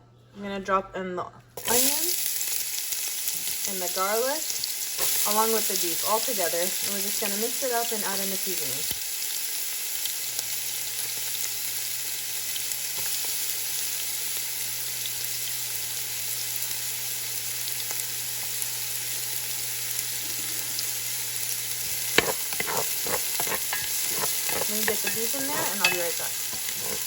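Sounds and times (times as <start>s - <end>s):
onion sizzling in oil: 1.6s - 27.0s
pot being stirred: 21.8s - 27.0s.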